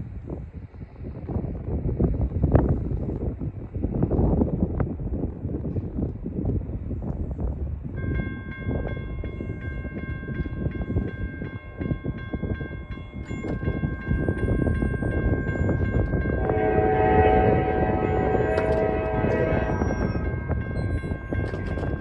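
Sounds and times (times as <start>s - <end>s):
railroad crossing bell ringing: 7.9s - 22.0s
locomotive air horn: 16.4s - 20.4s.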